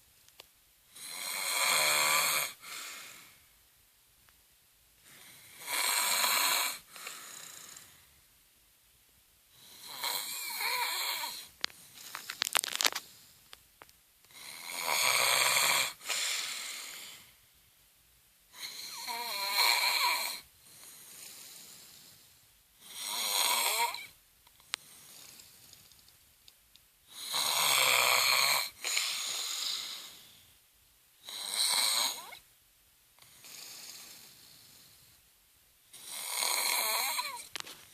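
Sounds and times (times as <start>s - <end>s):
woman snoring: 1.0s - 3.0s, 5.2s - 7.9s, 9.6s - 11.5s, 14.3s - 17.2s, 18.6s - 22.1s, 22.8s - 24.2s, 27.1s - 30.2s, 31.2s - 32.4s, 33.2s - 34.9s, 36.0s - 37.5s
crackly rattle: 11.6s - 14.0s.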